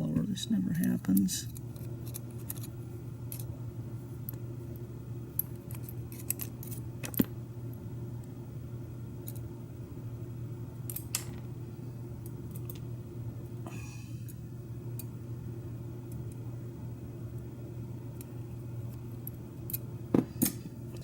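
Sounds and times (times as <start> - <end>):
steady low hum: 0.0 - 21.0
small metal clicks and scrapes: 5.5 - 6.8.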